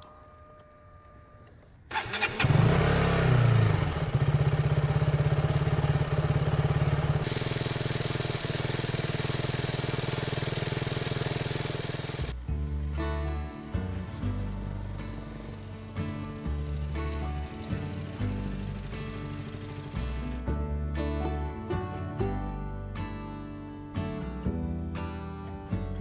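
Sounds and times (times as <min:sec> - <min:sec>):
motorcycle engine starting and idling: 0:01.4 - 0:20.5
music: 0:12.3 - 0:26.0.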